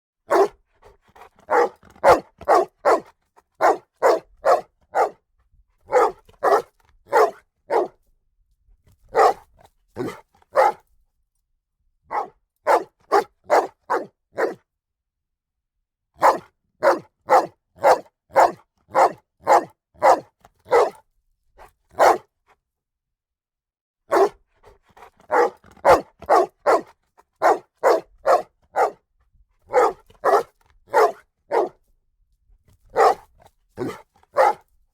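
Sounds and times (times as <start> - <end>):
dog barking: 0.3 - 5.2, 5.8 - 8.0, 9.1 - 10.8, 12.1 - 14.6, 16.2 - 21.0, 21.9 - 22.3, 24.1 - 29.0, 29.7 - 31.8, 32.9 - 34.7.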